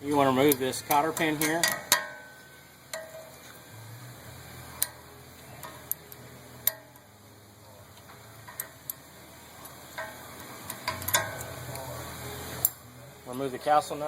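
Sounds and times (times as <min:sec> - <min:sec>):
pliers clicking on metal: 0:05.6 - 0:06.9.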